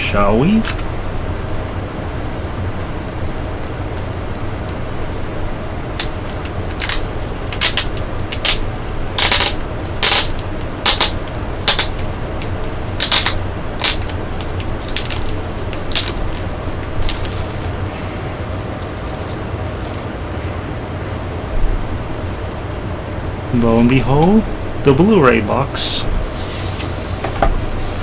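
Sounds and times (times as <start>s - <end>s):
steady low hum: 0.0s - 28.0s
wrapping crackling and rustling: 5.9s - 17.8s.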